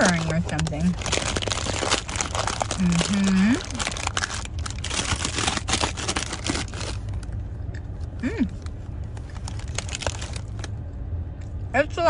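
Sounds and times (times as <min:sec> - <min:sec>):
crinkling and crunching: 0:00.0 - 0:07.9, 0:08.5 - 0:10.9
low steady hum: 0:00.0 - 0:12.0
person humming: 0:08.2 - 0:08.5.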